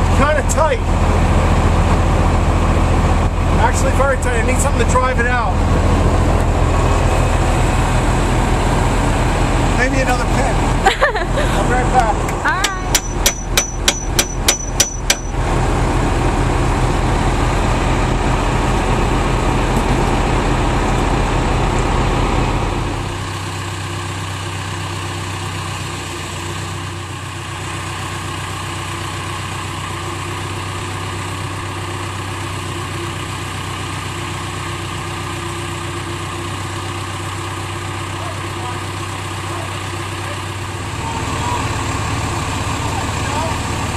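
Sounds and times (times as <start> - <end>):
backhoe engine running: 0.0 - 43.9
hammer striking metal: 12.6 - 15.4.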